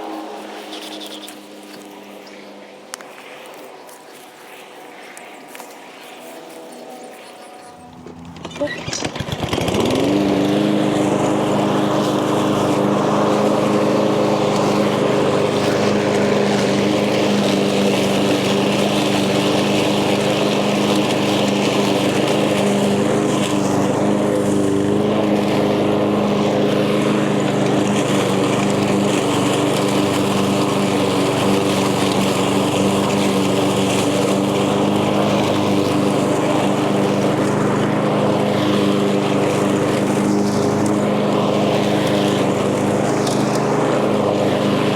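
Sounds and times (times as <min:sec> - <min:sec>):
lawn mower engine running: 0:00.0 - 0:44.9.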